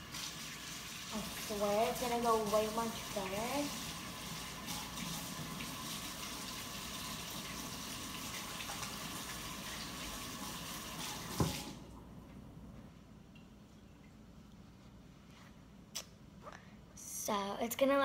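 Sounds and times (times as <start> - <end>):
tap water running: 0.0 - 12.1.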